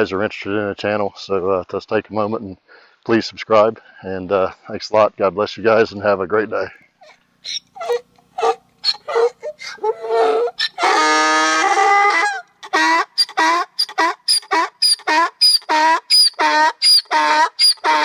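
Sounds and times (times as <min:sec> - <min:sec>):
animal calling loudly: 0:07.0 - 0:18.0.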